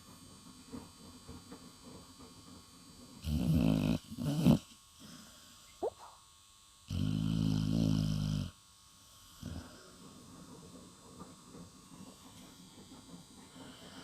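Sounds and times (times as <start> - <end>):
dog snoring: 3.2 - 5.2, 6.8 - 8.6, 9.2 - 10.4.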